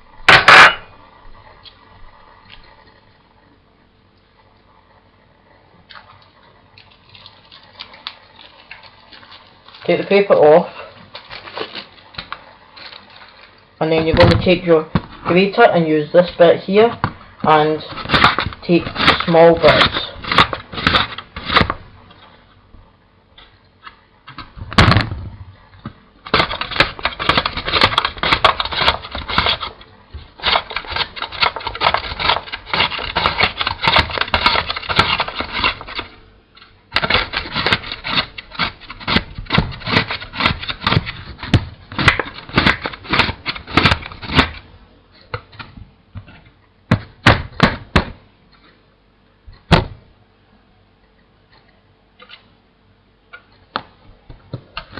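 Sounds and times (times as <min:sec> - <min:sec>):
cucumber rasping on grater: 0:17.8 - 0:21.7, 0:26.3 - 0:36.1, 0:36.9 - 0:44.6.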